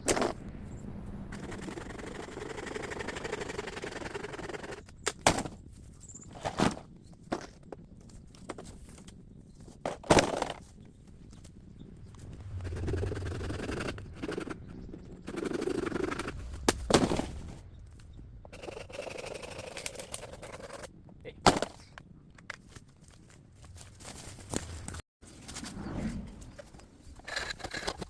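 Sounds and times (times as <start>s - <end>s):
rustling: 22.6s - 26.5s.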